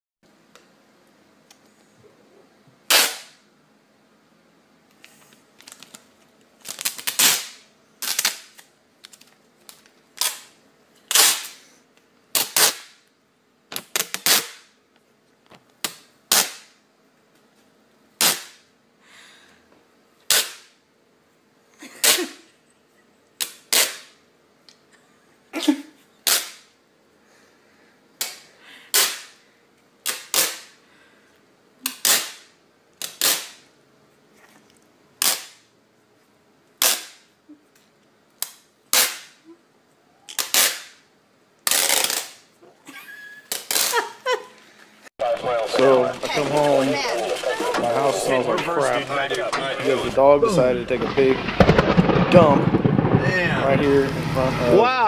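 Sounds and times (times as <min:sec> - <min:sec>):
adhesive tape ripping: 0:02.9 - 0:03.4, 0:06.6 - 0:11.6, 0:12.3 - 0:13.0, 0:13.7 - 0:14.7, 0:15.8 - 0:16.7, 0:18.2 - 0:18.6, 0:20.3 - 0:20.7, 0:22.0 - 0:22.4, 0:23.4 - 0:24.2, 0:26.2 - 0:26.7, 0:28.2 - 0:29.4, 0:30.0 - 0:30.7, 0:31.8 - 0:33.6, 0:35.2 - 0:35.6, 0:36.8 - 0:37.3, 0:38.4 - 0:39.4, 0:40.3 - 0:41.0, 0:41.6 - 0:42.5, 0:43.5 - 0:44.2.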